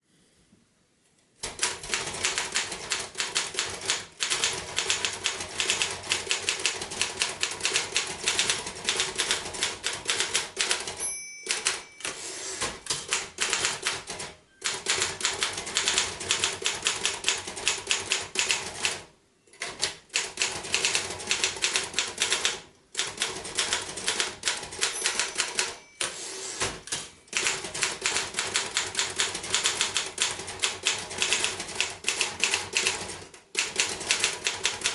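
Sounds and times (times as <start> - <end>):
typewriter keys clacking: 1.4 - 19.0, 19.6 - 34.9
typewriter bell ringing: 10.6 - 12.6, 24.7 - 27.7.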